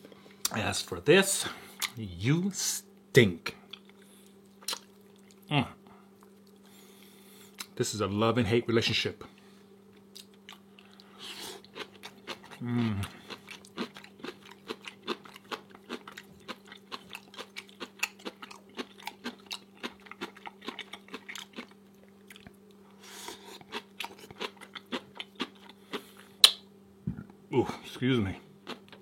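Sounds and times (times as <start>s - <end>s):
chewing crunchy food: 1.7s - 2.0s, 3.7s - 5.5s, 9.9s - 26.6s, 28.6s - 29.0s.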